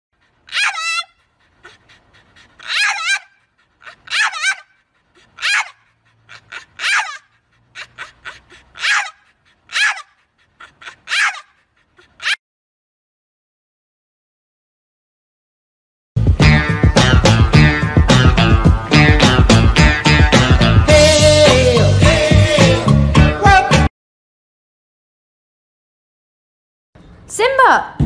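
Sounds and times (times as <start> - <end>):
dog panting: 0.2 - 12.4
dog whine-howling: 0.5 - 1.2, 2.6 - 4.7, 5.4 - 11.5.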